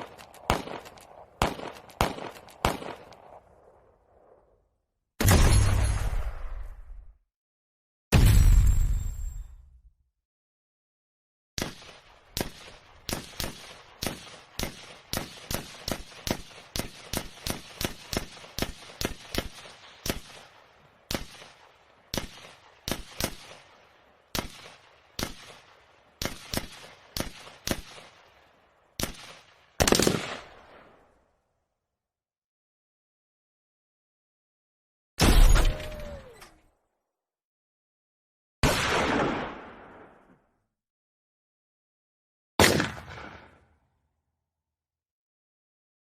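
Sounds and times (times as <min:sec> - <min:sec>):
pistol shots with echo: 0:00.0 - 0:03.4, 0:29.0 - 0:30.6, 0:42.6 - 0:43.5.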